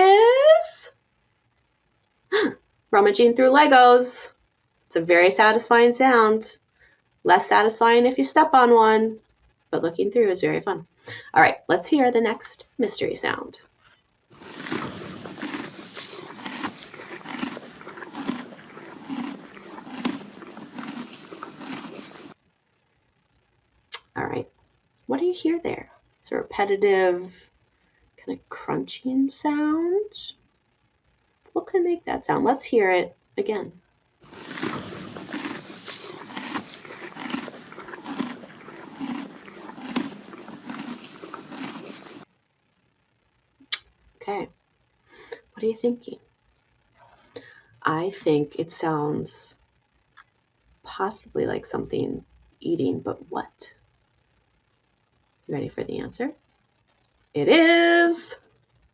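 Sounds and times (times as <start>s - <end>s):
horse chewing hay: 14.3s - 22.4s, 34.2s - 42.3s.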